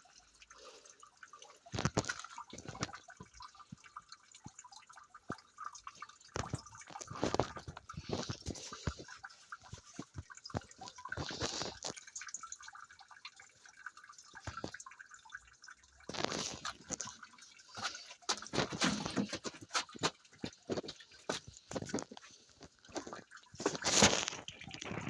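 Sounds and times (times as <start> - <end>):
small waterfall splashing: 1.6 - 25.0.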